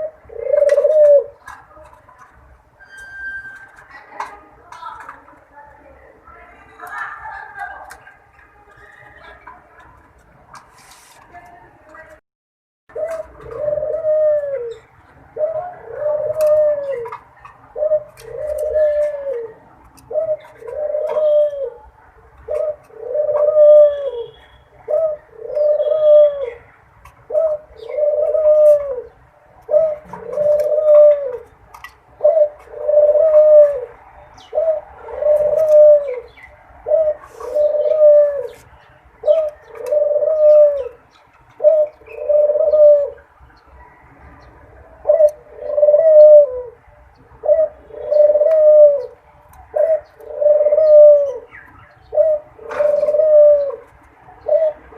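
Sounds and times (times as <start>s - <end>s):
dove cooing: 0.0s - 2.0s, 12.9s - 31.6s, 32.2s - 43.3s, 44.9s - 54.9s.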